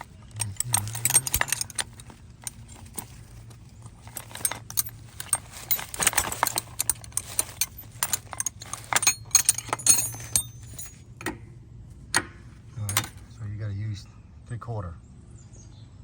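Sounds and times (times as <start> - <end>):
metal tools clinking and rattling: 0.0 - 11.5, 12.1 - 13.4.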